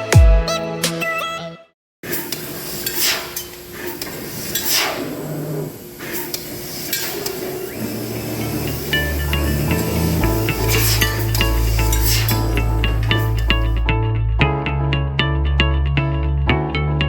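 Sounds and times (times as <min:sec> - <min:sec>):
hissing of laser cutting: 0:02.1 - 0:13.5.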